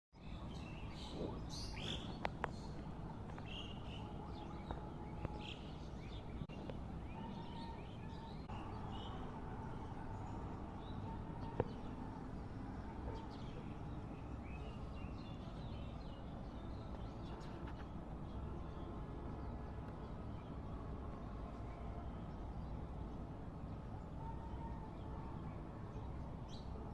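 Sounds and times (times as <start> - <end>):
birds chirping: 0.2 - 20.8.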